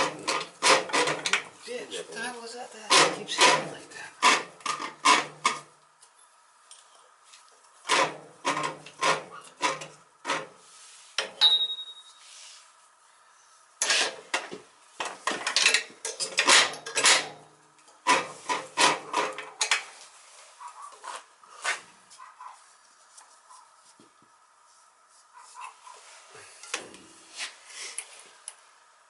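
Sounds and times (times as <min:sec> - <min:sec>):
metal tools clanking and rattling: 0:15.3 - 0:17.4.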